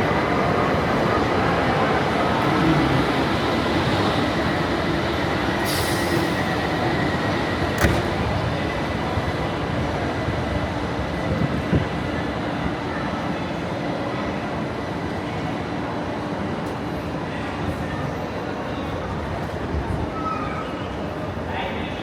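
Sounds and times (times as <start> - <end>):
train mechanical din: 2.3 - 10.5.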